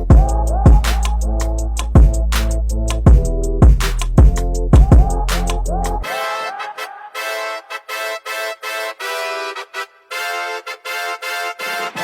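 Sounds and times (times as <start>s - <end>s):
electronic music with heavy beat: 0.0s - 9.5s.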